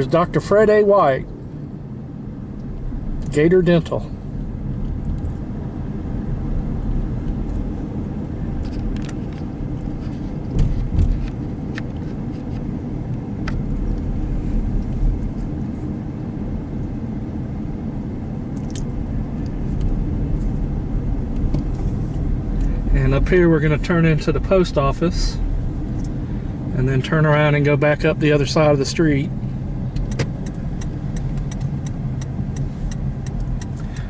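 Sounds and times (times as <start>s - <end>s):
car engine and tyre rumble: 0.0s - 34.0s.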